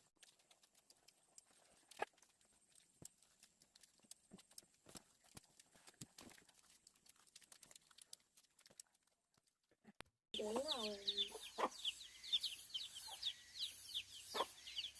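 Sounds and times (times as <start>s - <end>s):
faint clicks and taps: 0.2s - 9.5s.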